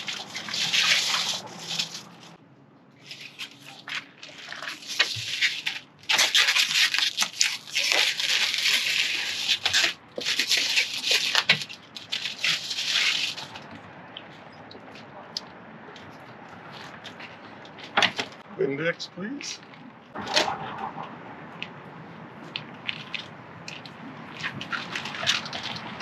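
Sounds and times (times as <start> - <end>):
rubbing and crackling on plastic panels: 0.0 - 2.4, 3.0 - 18.5.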